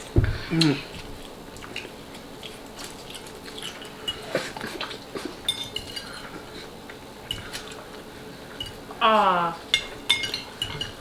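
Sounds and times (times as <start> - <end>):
cutlery clinking against dishes: 5.4 - 6.4, 9.7 - 11.0.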